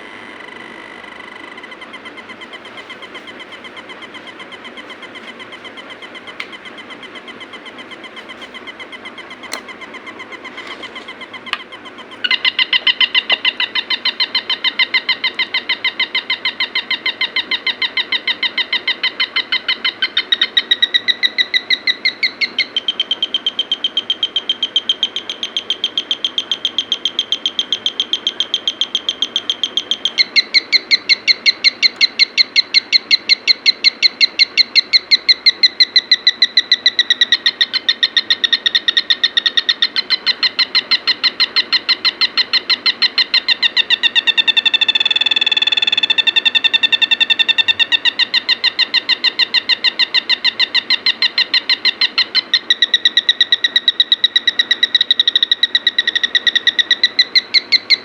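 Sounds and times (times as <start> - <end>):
synthetic bird chirps: 0.0 - 58.0
click: 6.2 - 6.6, 9.4 - 11.7.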